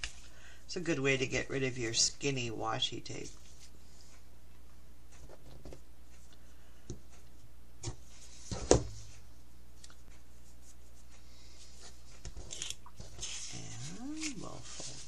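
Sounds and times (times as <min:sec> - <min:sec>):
paper rubbing and rustling: 0:12.4 - 0:15.0.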